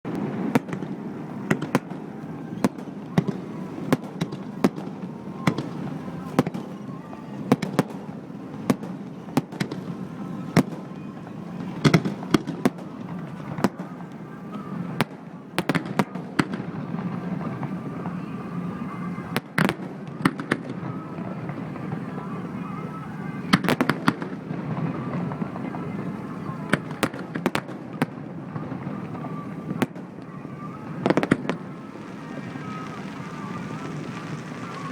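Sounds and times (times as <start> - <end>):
fireworks shells bursting: 30.9 - 34.9.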